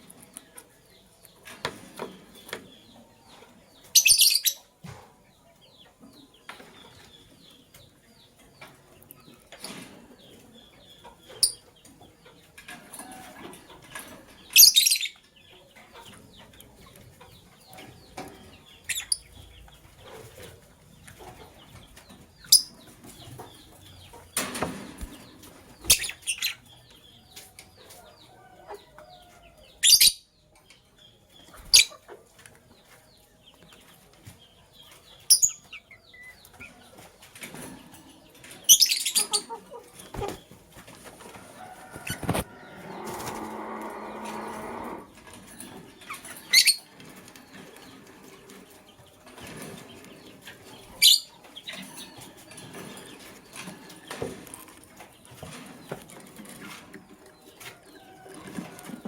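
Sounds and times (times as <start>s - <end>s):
lovebirds chirping: 0.0s - 59.0s
wings flapping: 40.0s - 41.2s, 41.9s - 43.6s.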